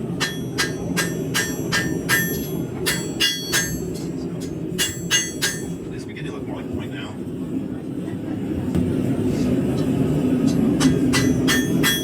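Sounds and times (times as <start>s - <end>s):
hammer ringing on anvil: 0.2s - 4.0s, 4.8s - 5.8s, 10.8s - 12.0s.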